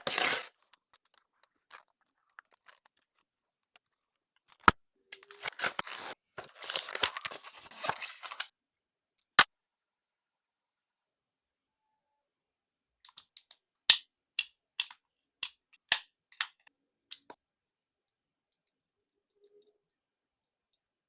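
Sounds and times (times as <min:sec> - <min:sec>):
packaging tearing and crinkling: 0:00.0 - 0:03.2, 0:05.2 - 0:08.5
packaging rustling: 0:00.0 - 0:03.9, 0:05.2 - 0:08.5.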